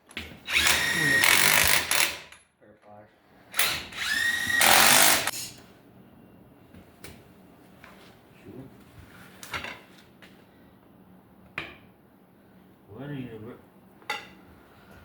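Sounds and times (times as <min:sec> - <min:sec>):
power tool whining: 0:00.5 - 0:02.3, 0:03.6 - 0:05.3.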